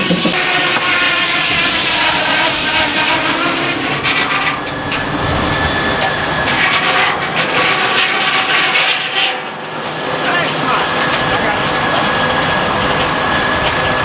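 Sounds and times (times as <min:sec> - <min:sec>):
ringing whine: 0:00.0 - 0:14.0
sawmill machinery drone: 0:00.0 - 0:14.0.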